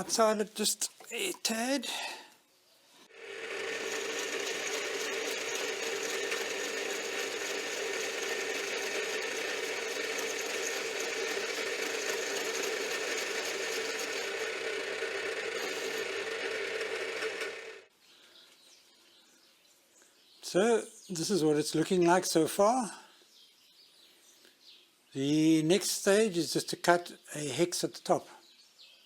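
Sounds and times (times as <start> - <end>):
metal lathe whirring: 3.1 - 17.9
gear rattle: 3.4 - 17.6.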